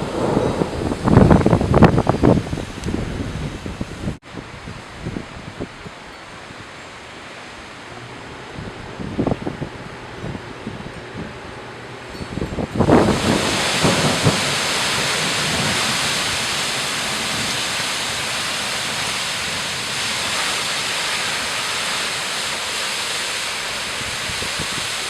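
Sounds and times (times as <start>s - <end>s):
wind buffeting microphone: 0.0s - 6.0s, 8.0s - 25.0s
heavy rain pouring: 0.0s - 11.8s, 12.6s - 25.0s.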